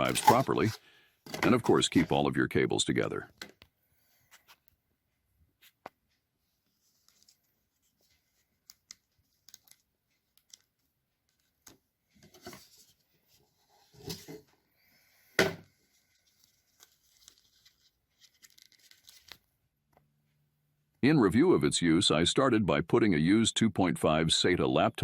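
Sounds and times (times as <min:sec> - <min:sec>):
packaging rustling and clicking: 0:00.0 - 0:02.1, 0:16.2 - 0:19.5.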